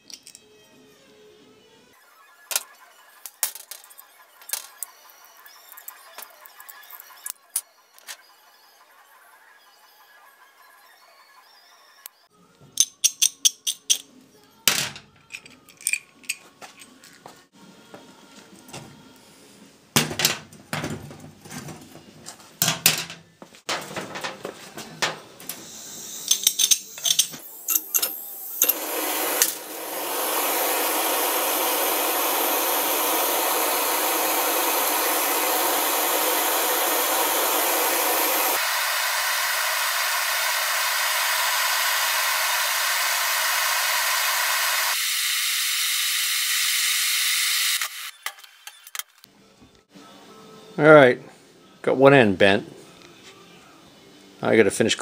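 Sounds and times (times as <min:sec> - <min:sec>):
hand tools clicking on metal: 0:12.8 - 0:14.1, 0:26.2 - 0:28.8
loud steady hiss: 0:25.5 - 0:45.0.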